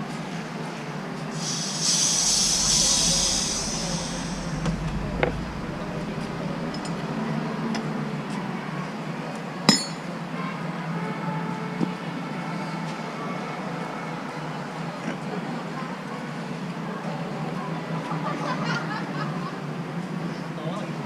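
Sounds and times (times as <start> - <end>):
excavator engine running: 1.4 - 7.8.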